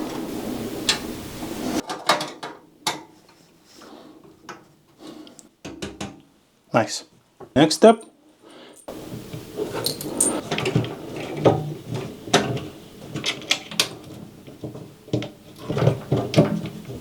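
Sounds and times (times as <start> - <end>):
small metal parts scraping: 8.5 - 13.8.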